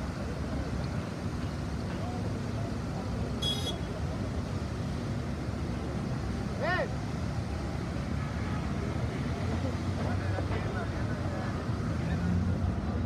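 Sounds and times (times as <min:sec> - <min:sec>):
city traffic rumble: 0:00.0 - 0:13.0.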